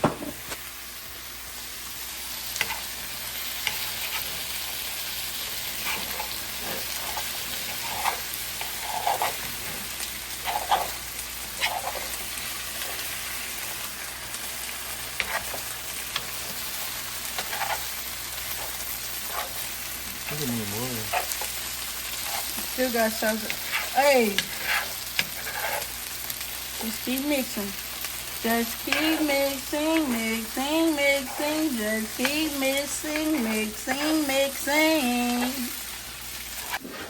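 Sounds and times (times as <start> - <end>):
rice sizzling in a pot: 0.0 - 37.0
utensil scraping and clicking on pot: 2.6 - 2.9, 3.6 - 4.5, 5.4 - 13.0, 15.2 - 16.6, 17.3 - 17.9, 18.5 - 19.6, 23.4 - 26.0, 28.9 - 29.3.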